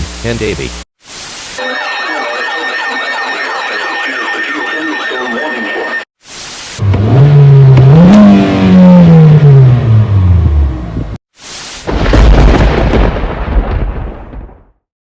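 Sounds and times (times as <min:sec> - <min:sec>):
thunderclap crack: 0:11.8 - 0:14.8
deep thunder rumble: 0:11.9 - 0:14.8.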